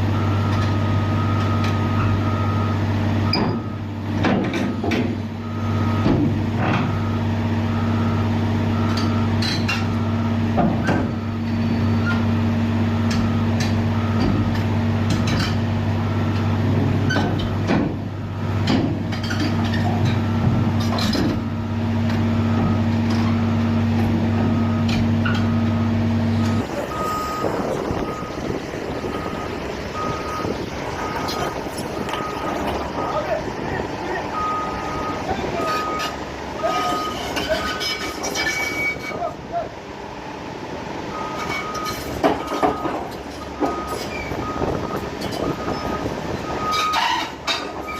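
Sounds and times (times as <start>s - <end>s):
heavy diesel machinery: 0.0s - 47.9s
reversing alarm beeping: 0.1s - 3.9s, 4.6s - 12.3s, 13.2s - 14.5s, 20.1s - 37.8s, 38.4s - 39.2s, 41.1s - 47.9s.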